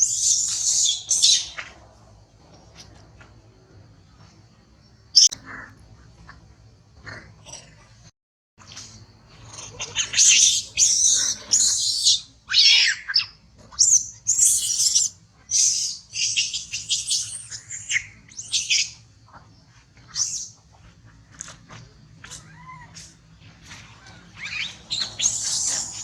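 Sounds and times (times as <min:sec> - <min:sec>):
monkeys screaming: 0:09.4 - 0:19.0, 0:22.2 - 0:23.2, 0:23.8 - 0:26.0.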